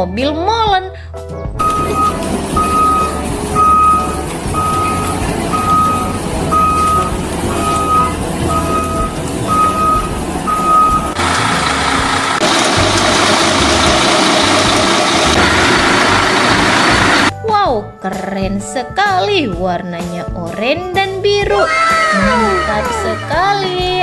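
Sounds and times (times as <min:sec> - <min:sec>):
diesel engine hum: 0:01.6 - 0:17.3
truck reversing alarm beeping: 0:01.6 - 0:17.3.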